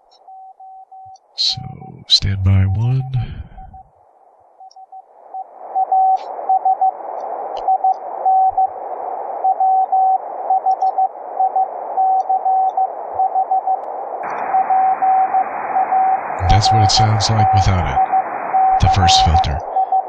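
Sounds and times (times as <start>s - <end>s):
radio band hiss: 1.4s - 3.7s, 16.4s - 19.8s.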